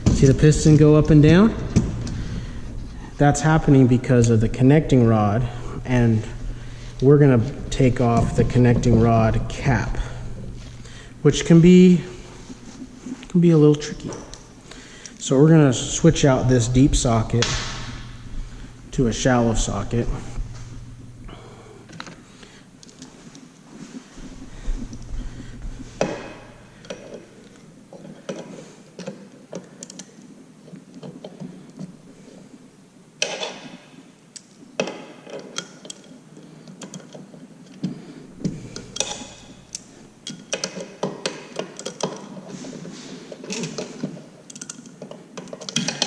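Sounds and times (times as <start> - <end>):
socket ratchet clicking: 38.8 - 42.2.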